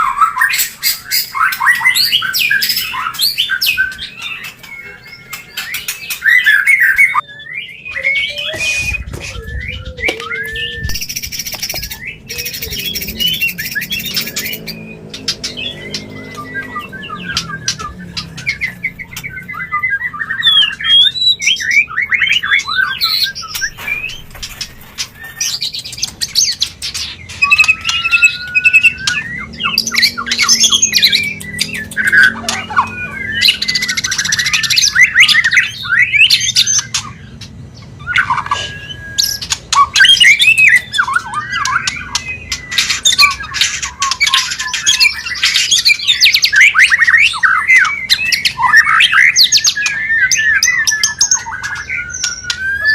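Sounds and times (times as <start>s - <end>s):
songbird singing varied whistles: 0.1s - 24.3s.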